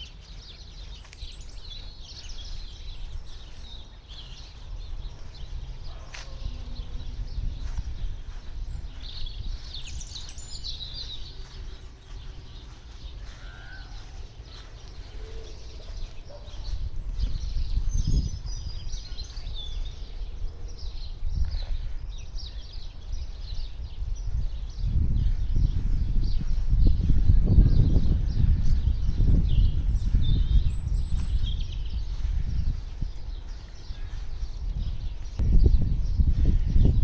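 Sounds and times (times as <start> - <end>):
songbirds chirping: 0.0 - 37.0
steady low rumble: 0.2 - 37.0.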